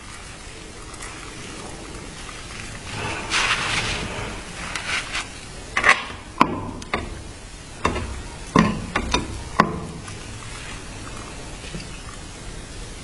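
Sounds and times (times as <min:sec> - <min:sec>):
hard objects knocking and clicking: 0:05.8 - 0:10.2.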